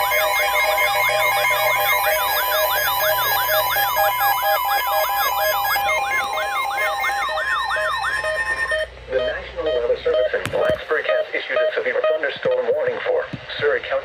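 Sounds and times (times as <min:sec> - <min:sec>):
electronic beeps: 0:00.0 - 0:10.4, 0:11.0 - 0:12.8
yelping electronic siren: 0:00.0 - 0:10.4.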